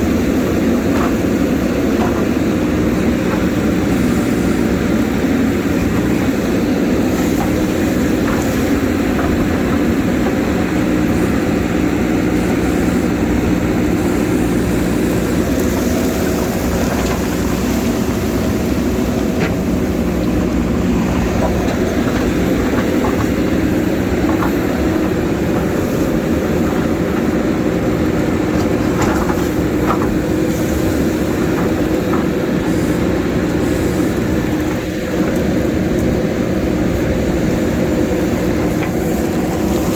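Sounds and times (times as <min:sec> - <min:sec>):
diesel engine running under load: 0:00.0 - 0:39.9.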